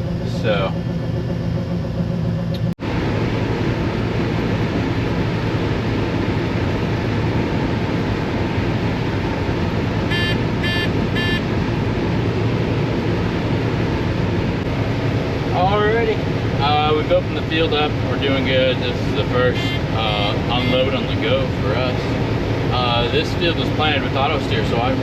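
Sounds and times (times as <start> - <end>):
combine harvester engine hum: 0.0 - 25.0
short electronic beeps: 10.1 - 11.5.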